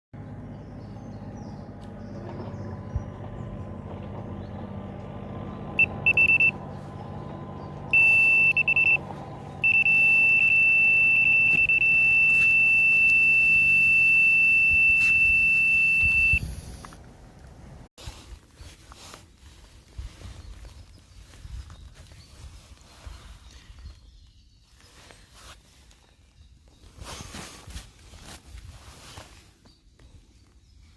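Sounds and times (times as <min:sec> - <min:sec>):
bite alarm beeping: 0:05.8 - 0:06.6, 0:07.9 - 0:16.4.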